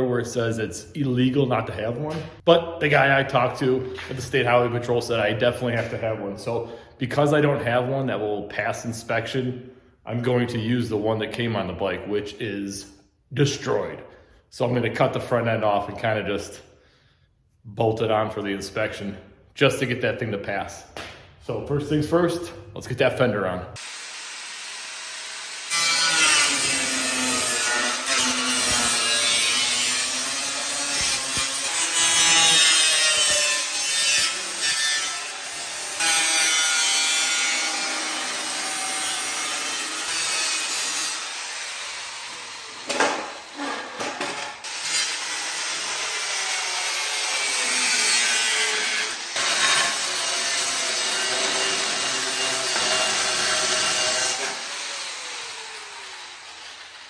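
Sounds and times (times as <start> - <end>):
power saw cutting metal: 23.8 - 57.0.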